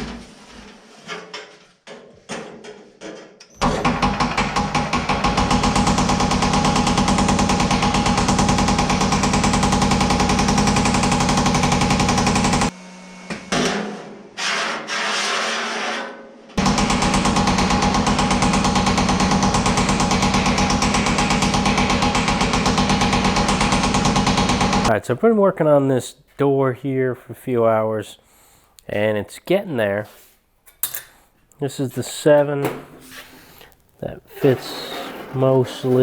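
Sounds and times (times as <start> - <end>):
power hammer pounding steel: 3.6 - 12.7, 16.6 - 24.9.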